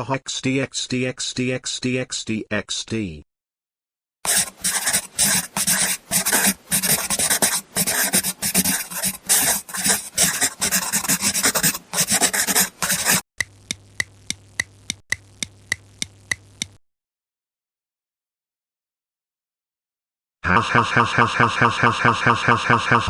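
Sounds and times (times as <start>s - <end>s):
scribbling on paper: 4.3s - 13.2s
sharp ticks: 13.4s - 16.8s.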